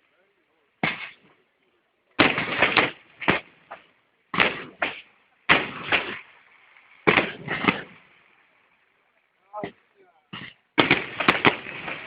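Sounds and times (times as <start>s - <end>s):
fireworks bangs: 0.8s - 1.4s, 2.2s - 8.4s, 9.6s - 12.0s.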